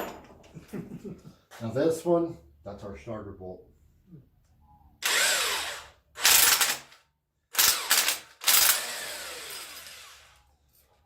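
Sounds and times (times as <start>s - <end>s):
power tool spinning a bolt: 5.0s - 10.4s.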